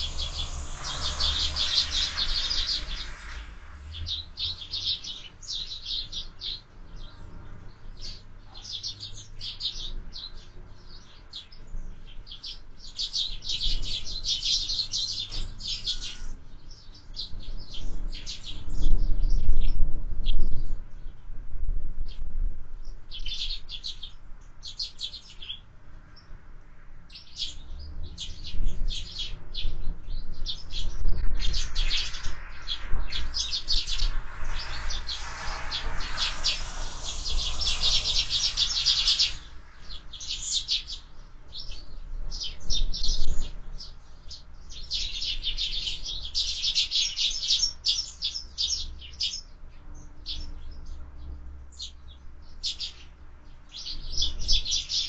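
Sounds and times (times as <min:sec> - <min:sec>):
wind rumble: 0:00.0 - 0:05.7, 0:17.2 - 0:24.3, 0:27.6 - 0:44.0
sparrows chirping: 0:00.0 - 0:21.3, 0:22.1 - 0:55.0.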